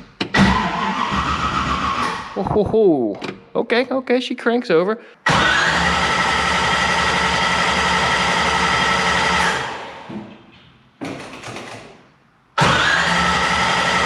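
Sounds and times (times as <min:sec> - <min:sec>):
starter motor cranking engine: 0:00.4 - 0:02.4, 0:05.3 - 0:09.8, 0:12.6 - 0:14.0.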